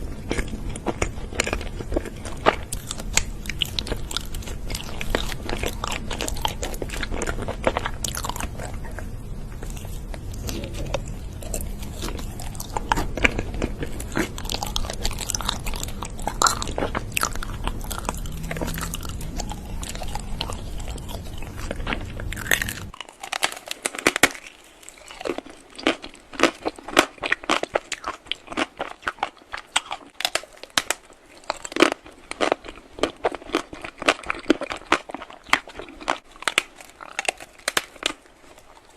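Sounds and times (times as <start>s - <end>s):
low hum: 0.0s - 23.0s
crunchy food being chewed: 0.0s - 38.9s.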